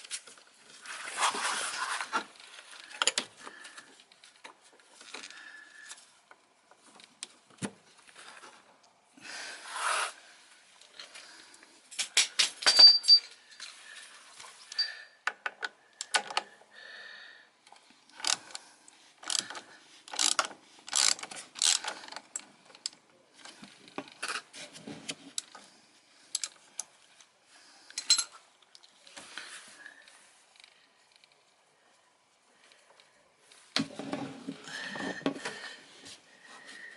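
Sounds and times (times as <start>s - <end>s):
metal tools clinking: 12.6s - 13.7s, 28.0s - 28.4s.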